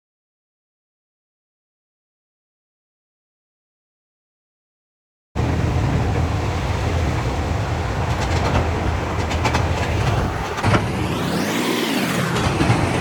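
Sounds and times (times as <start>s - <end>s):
vehicle rumble: 5.4s - 13.0s
rattling clicks: 8.0s - 11.2s.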